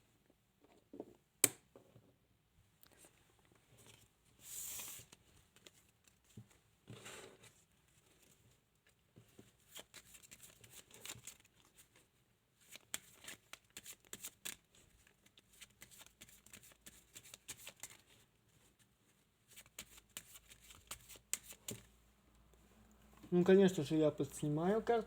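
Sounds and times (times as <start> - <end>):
playing cards shuffling: 9.6 - 11.8, 12.6 - 18.2, 19.5 - 21.9.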